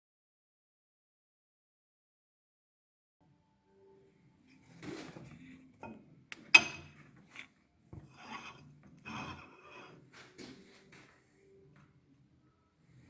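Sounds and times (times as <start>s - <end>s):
scraping and rubbing: 6.5s - 10.8s.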